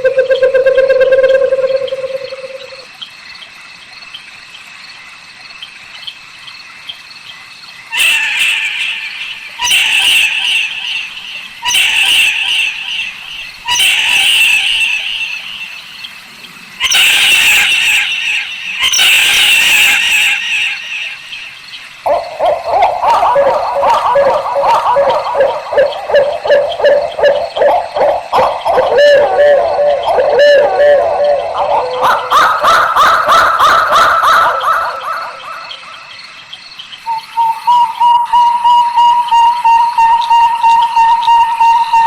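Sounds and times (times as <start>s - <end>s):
owl screeching: 7.9s - 15.6s, 16.8s - 21.5s, 22.1s - 35.9s.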